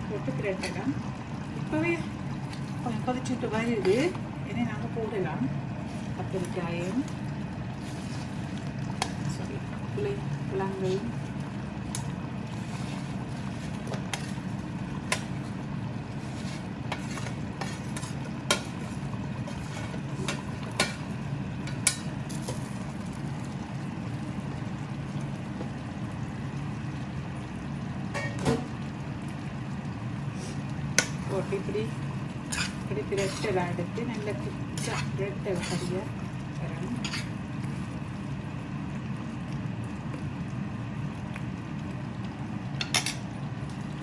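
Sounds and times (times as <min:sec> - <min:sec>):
steady low hum: 0:00.0 - 0:44.0
metal spoon clinking on a pot: 0:21.7 - 0:22.6, 0:28.1 - 0:28.5, 0:42.8 - 0:43.2.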